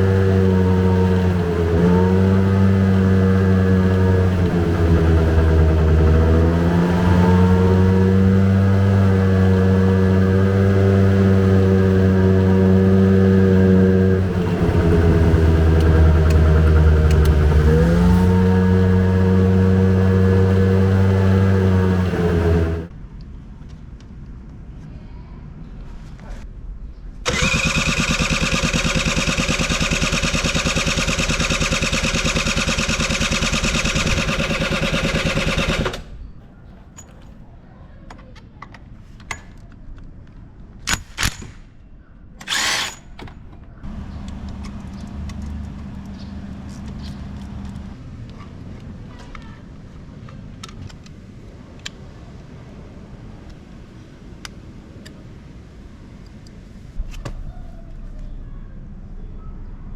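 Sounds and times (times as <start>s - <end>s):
small engine running: 0.0s - 22.9s, 27.3s - 36.2s, 42.4s - 43.0s, 43.8s - 48.0s
low hum: 0.0s - 23.7s, 52.8s - 59.9s
scattered clicks: 43.9s - 48.0s.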